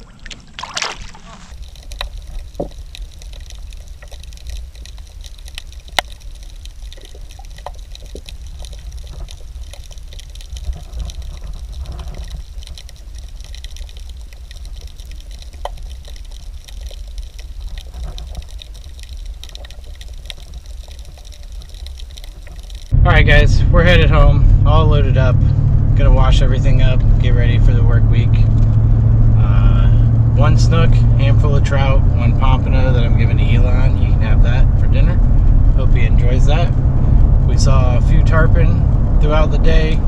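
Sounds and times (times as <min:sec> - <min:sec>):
water sloshing against kayak hull: 0:00.0 - 0:22.9
wind rumble on microphone: 0:01.2 - 0:40.0.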